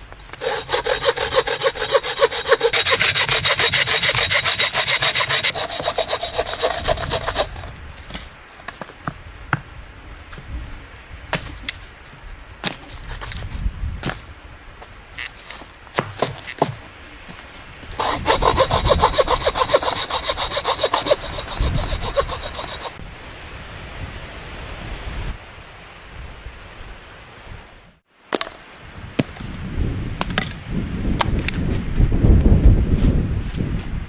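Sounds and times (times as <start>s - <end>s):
saw cutting through wood: 0.3s - 7.7s, 18.0s - 23.0s.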